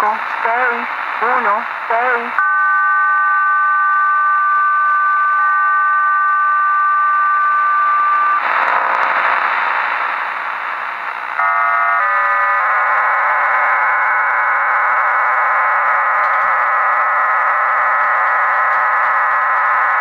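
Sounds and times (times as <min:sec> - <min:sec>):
chord of steady radio tones: 0:00.0 - 0:02.4, 0:05.7 - 0:20.0
radio static: 0:00.0 - 0:02.4, 0:08.1 - 0:11.5
multi-tone data transmission: 0:00.0 - 0:20.0.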